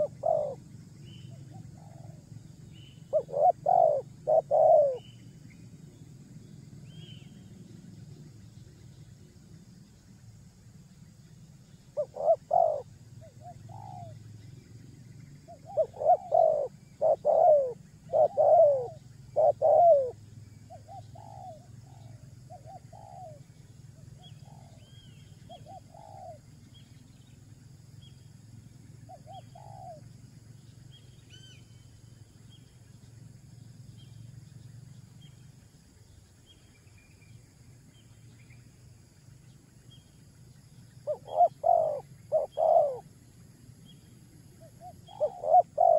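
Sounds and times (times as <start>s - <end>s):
dove cooing: 0.0s - 0.6s, 1.2s - 2.3s, 3.0s - 5.2s, 12.0s - 14.2s, 15.5s - 23.4s, 24.2s - 26.4s, 29.1s - 30.0s, 41.0s - 43.1s, 44.6s - 45.9s
small birds chirping: 0.0s - 45.9s
steady low hum: 0.0s - 45.9s.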